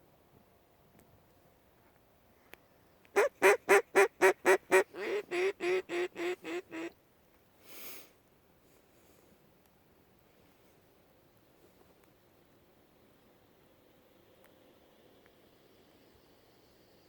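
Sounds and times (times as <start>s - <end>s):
duck call quacking: 3.2s - 6.9s
breathy hiss: 7.6s - 9.4s.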